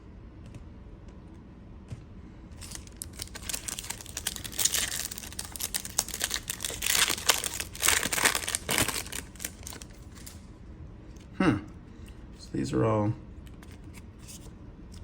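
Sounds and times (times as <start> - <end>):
plastic wrapper tearing and crinkling: 2.6 - 10.4.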